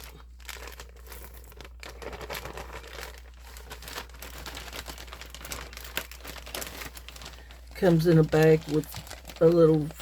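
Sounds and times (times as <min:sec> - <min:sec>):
plastic packaging crinkling: 0:00.0 - 0:10.0.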